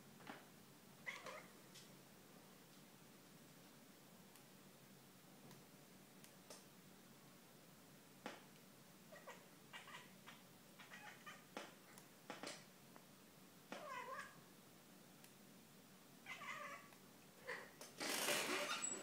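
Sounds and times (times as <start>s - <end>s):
cat meowing: 1.0s - 1.5s, 9.1s - 11.5s, 13.8s - 14.4s, 16.2s - 17.8s.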